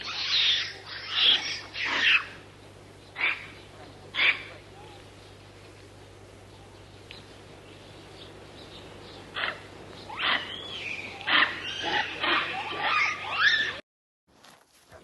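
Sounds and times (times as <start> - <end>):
birds calling: 0.0 - 13.8
low steady hum: 0.0 - 13.8.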